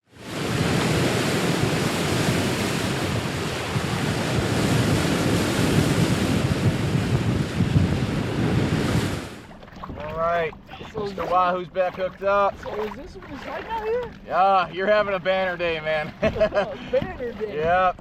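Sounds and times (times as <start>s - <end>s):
sea water washing: 0.0s - 18.0s
wind buffeting microphone: 0.2s - 14.2s.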